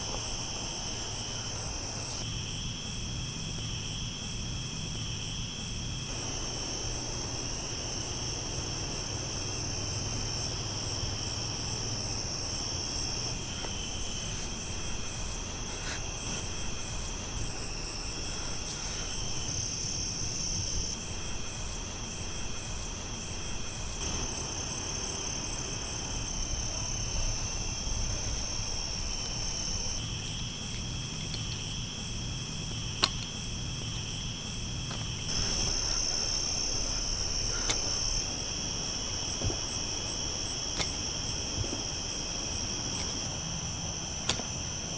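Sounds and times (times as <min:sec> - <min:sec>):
crickets chirping: 0:00.0 - 0:44.9.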